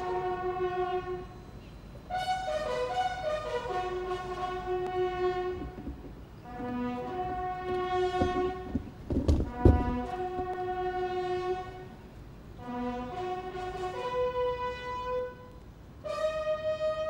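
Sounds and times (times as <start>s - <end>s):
brass band playing: 0.0s - 1.3s, 2.1s - 17.0s
loud thumps: 5.2s - 10.7s.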